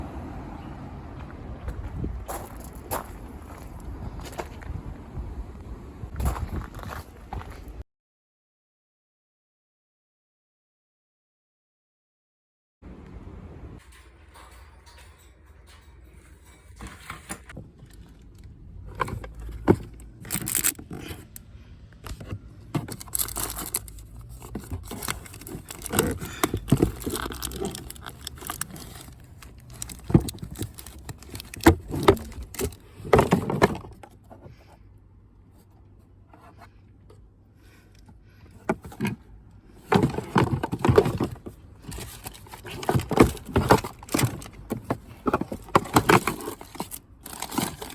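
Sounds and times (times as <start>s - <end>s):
objects scraping and clicking: 13.8s - 34.8s, 37.9s - 47.9s.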